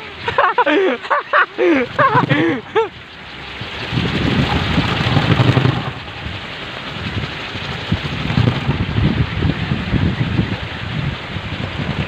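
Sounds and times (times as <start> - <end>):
rain hissing: 0.0 - 12.0
storm wind gusting: 3.6 - 12.0.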